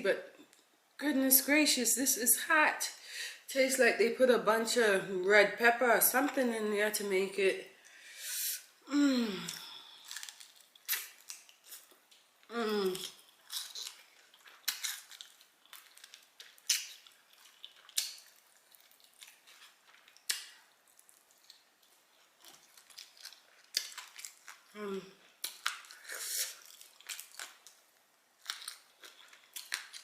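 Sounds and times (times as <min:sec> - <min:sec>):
person humming: 0:08.9 - 0:09.6, 0:12.5 - 0:13.0
chewing crunches: 0:09.4 - 0:27.8, 0:28.4 - 0:30.0.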